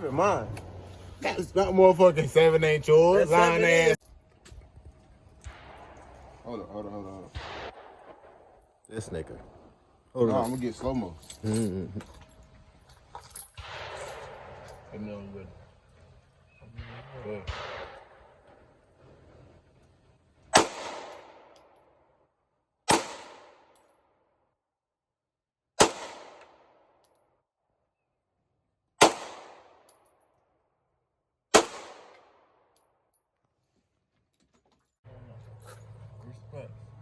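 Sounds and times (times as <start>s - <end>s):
gunshots with ringing echo: 5.5s - 6.5s, 7.3s - 8.8s, 13.6s - 15.0s, 16.7s - 18.8s, 20.5s - 21.8s, 22.9s - 23.8s, 25.8s - 27.0s, 29.0s - 30.0s, 31.5s - 32.7s.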